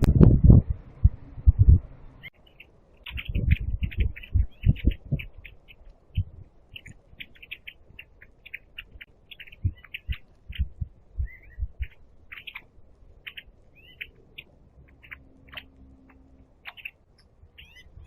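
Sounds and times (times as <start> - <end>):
dull low thumps: 0.0 - 2.3, 3.2 - 5.4, 6.1 - 6.6, 9.6 - 12.1
small birds chirping: 0.0 - 18.0.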